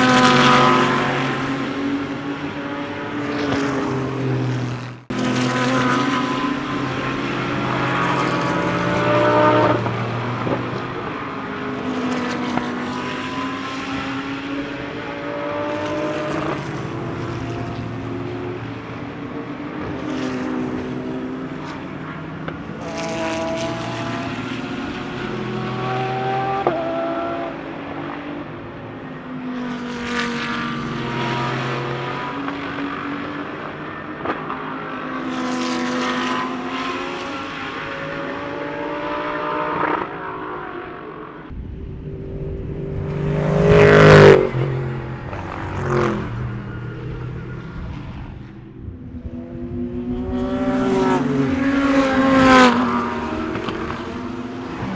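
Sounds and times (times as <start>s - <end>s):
race car engines passing at speed: 0.0s - 54.9s.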